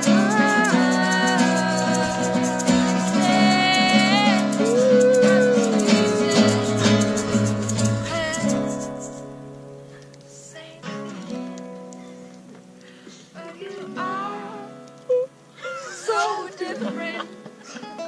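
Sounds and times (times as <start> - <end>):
person singing a wavering note: 0.0 - 7.4
strummed acoustic guitar: 0.0 - 18.0.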